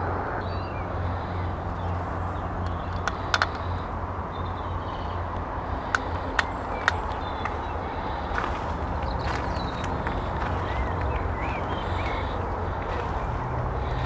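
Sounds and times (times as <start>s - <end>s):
steady low rumble: 0.0s - 14.0s
sharp clicks: 2.6s - 3.7s, 5.9s - 7.7s.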